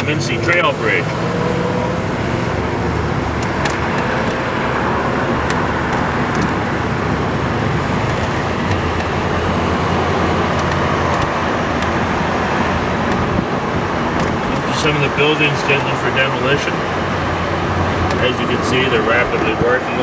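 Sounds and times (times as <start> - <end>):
vehicle rumble and road noise: 0.0 - 20.0.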